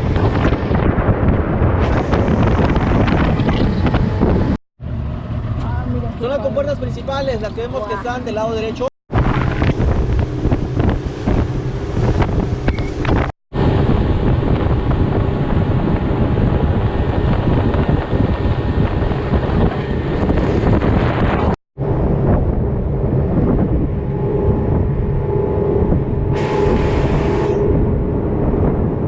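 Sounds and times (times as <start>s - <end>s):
wind buffeting microphone: 0.0s - 29.0s
outboard motor droning: 9.2s - 29.0s.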